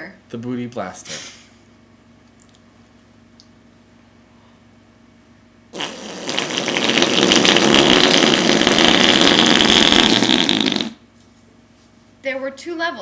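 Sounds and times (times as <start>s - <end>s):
raspberry blown on arm: 5.7s - 11.0s.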